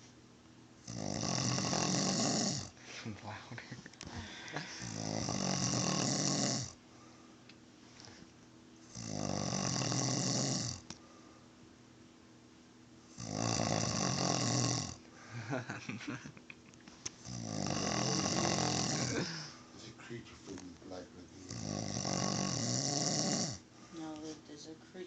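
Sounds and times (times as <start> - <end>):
man snoring heavily: 0.9 - 2.8, 4.6 - 6.8, 8.9 - 10.8, 13.1 - 15.6, 17.2 - 19.6, 21.4 - 23.6.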